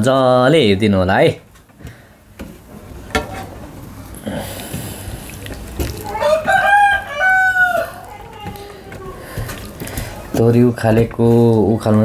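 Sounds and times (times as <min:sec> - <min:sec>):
rooster crowing: 0:06.0 - 0:08.7.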